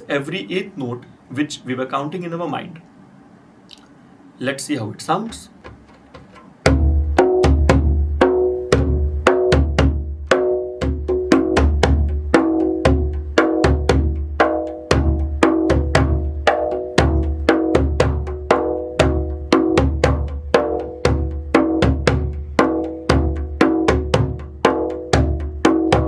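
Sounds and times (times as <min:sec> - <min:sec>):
djembe played by hand: 0:05.6 - 0:26.0.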